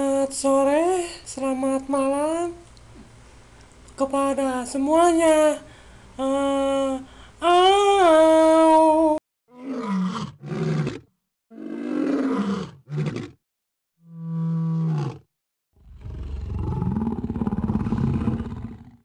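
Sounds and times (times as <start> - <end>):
cat growling: 15.8 - 19.0.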